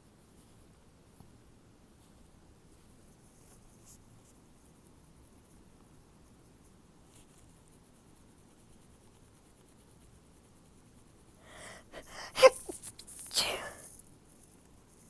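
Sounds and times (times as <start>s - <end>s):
person's stifled sneeze: 11.5s - 13.8s.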